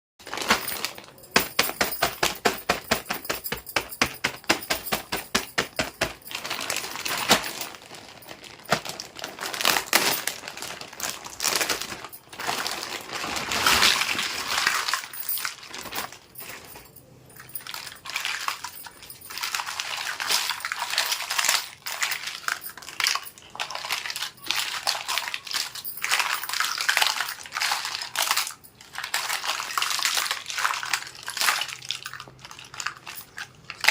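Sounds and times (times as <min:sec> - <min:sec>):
clattering and rustling: 0:00.2 - 0:24.4.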